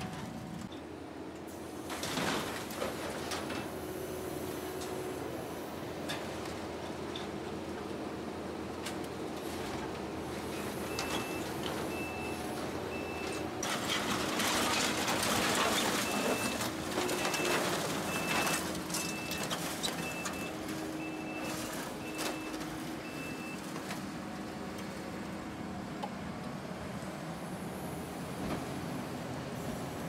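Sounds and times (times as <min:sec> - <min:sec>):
skid steer engine running: 0:00.0 - 0:30.0
backup alarm beeping: 0:16.0 - 0:23.6.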